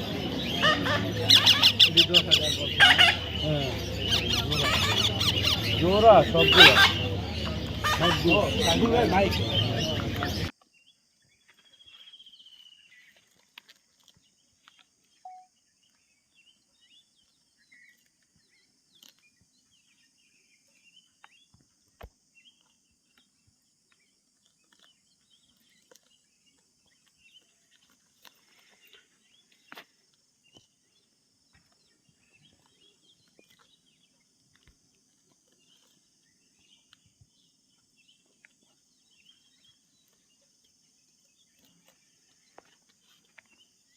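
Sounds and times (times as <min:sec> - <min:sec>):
faint bird chirps: 0:14.6 - 0:43.9.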